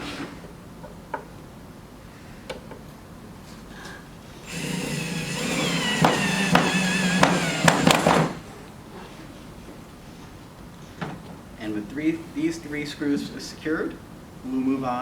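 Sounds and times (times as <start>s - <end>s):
sharp clicks of drill: 4.4s - 8.5s
electric drill whining: 4.4s - 8.6s.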